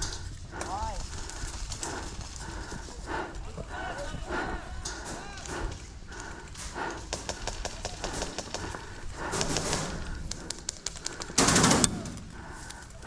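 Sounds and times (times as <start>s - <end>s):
airsoft guns firing: 6.6s - 13.0s.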